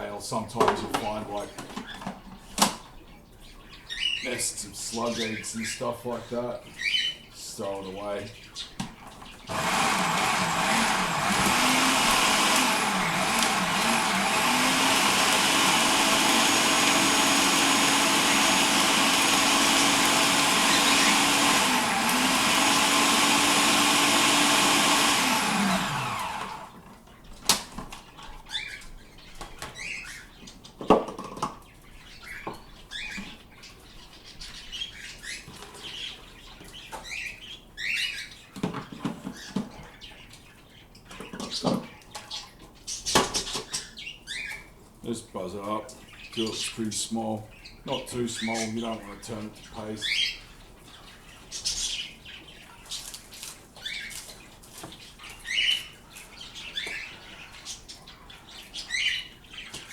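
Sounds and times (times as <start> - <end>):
birds chirping softly: 0.0 - 59.9
food processor chopping: 9.5 - 26.8.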